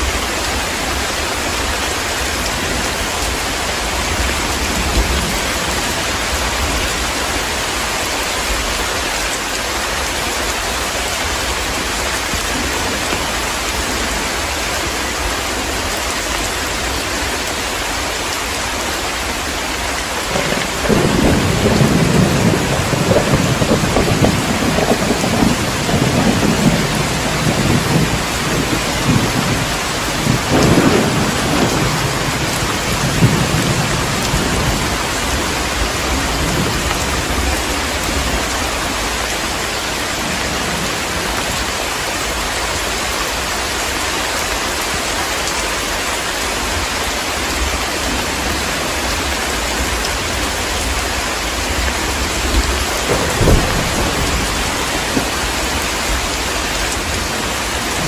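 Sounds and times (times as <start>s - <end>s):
heavy rain falling: 0.0s - 58.0s
thunder rumbling: 20.0s - 39.5s, 48.4s - 58.0s.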